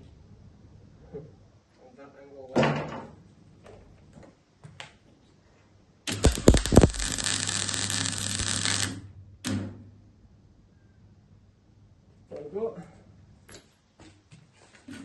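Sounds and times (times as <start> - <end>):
arc welding crackling sizzle: 6.1 - 9.7
low hum: 6.1 - 12.0.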